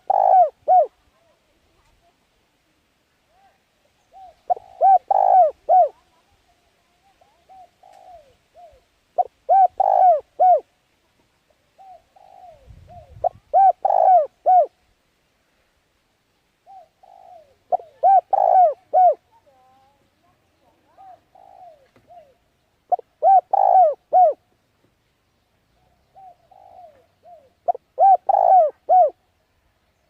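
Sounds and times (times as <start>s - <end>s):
bird calling: 0.0s - 1.0s, 4.0s - 6.1s, 7.2s - 10.7s, 11.8s - 14.8s, 16.6s - 24.5s, 25.6s - 29.3s.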